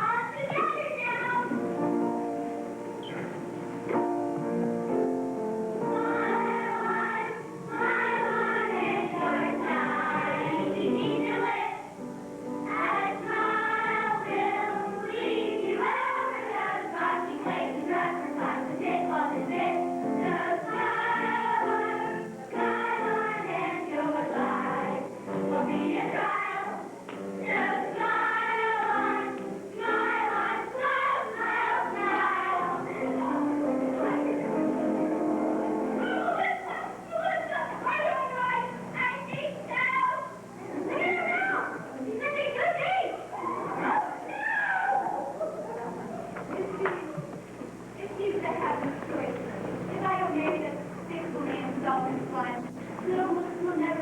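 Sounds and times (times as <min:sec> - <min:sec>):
children's choir singing: 0:00.0 - 0:04.6, 0:05.8 - 0:38.7, 0:48.0 - 0:54.0
instrumental accompaniment: 0:00.6 - 0:23.9.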